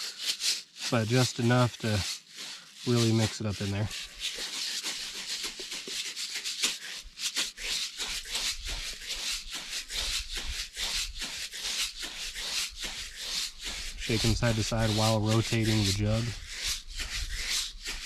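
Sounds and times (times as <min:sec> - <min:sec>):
beads rattling in shaken plastic jug: 0:00.0 - 0:11.3.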